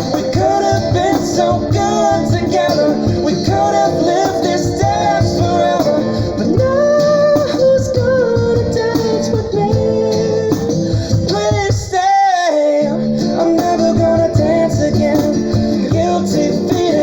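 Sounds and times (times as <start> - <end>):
cajon thumps: 0.0 - 12.0, 13.6 - 17.0
pop ballad music: 0.0 - 17.0.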